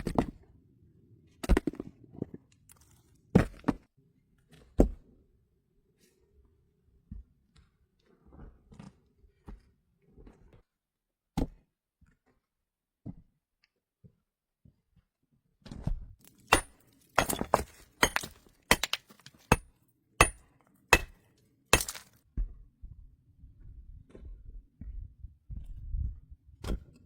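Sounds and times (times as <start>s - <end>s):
hard objects clinking and knocking: 16.3s - 20.4s, 21.0s - 21.2s, 21.8s - 22.1s.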